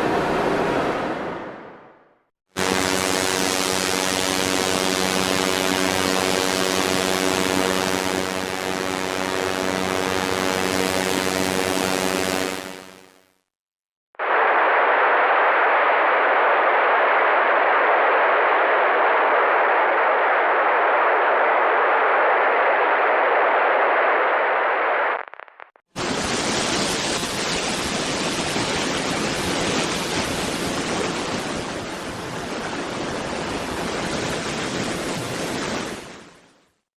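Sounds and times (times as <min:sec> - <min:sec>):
muffled static hiss: 0:14.2 - 0:26.2.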